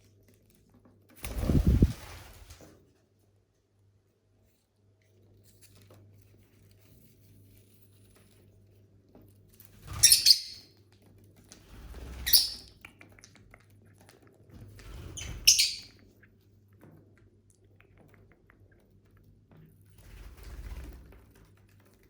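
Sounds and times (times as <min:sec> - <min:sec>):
lovebirds shrill calls: 0:09.9 - 0:10.7, 0:12.2 - 0:12.7, 0:15.2 - 0:16.0.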